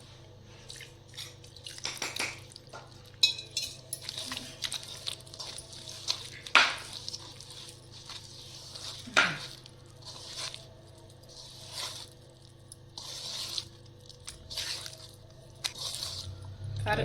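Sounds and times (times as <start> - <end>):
wet paste squishing by hand: 4.0 - 16.7.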